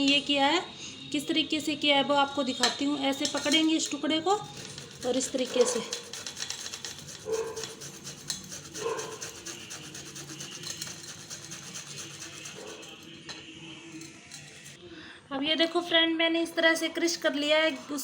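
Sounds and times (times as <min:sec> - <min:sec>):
ginger scraping against a plate: 0:04.3 - 0:13.3, 0:13.9 - 0:14.8, 0:17.1 - 0:18.0.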